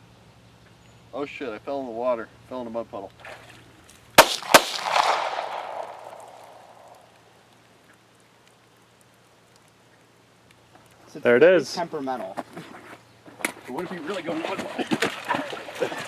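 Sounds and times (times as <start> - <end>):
pistol shots: 4.2 - 7.1.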